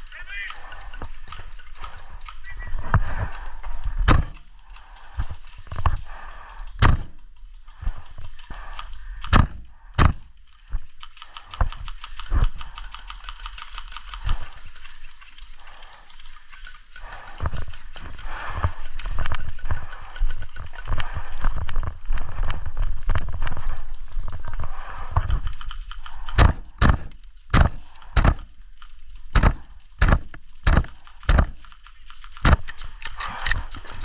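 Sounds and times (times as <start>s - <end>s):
airsoft shots cracking: 9.2s - 10.3s, 26.3s - 28.5s, 29.3s - 31.6s.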